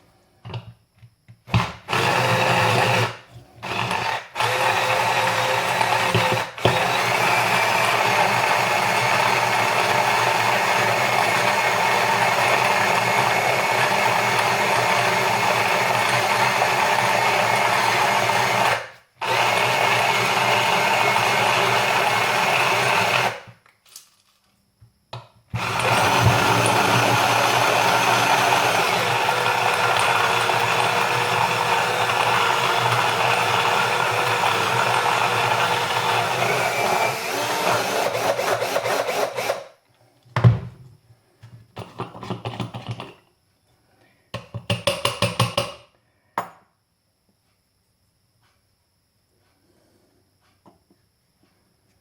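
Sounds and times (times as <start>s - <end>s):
drill-driven coffee grinder grinding: 1.5s - 23.5s, 25.6s - 39.7s.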